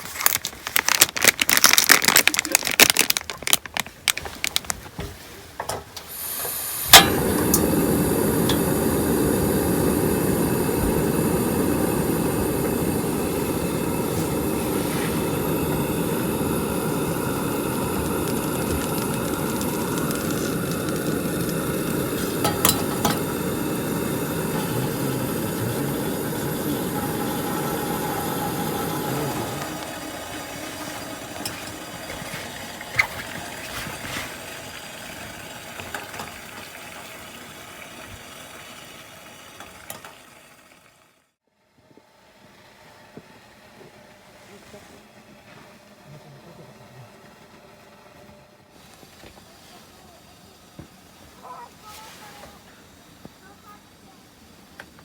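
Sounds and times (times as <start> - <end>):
gas burner roaring: 0.0 - 41.3
stove igniter click: 6.0 - 30.0
metal cookware clinking: 22.2 - 23.5.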